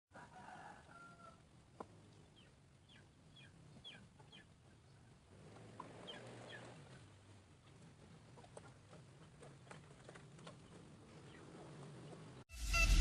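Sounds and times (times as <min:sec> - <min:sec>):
quail chirps: 0:02.3 - 0:04.6, 0:06.0 - 0:06.8.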